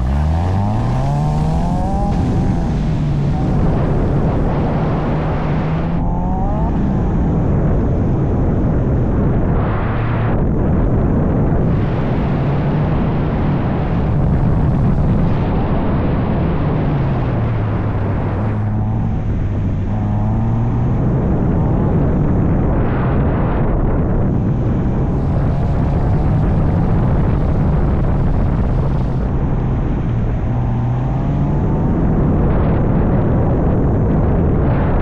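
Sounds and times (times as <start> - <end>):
road and rain noise: 0.0 - 9.4, 10.8 - 35.0
car engine revving: 0.0 - 35.0.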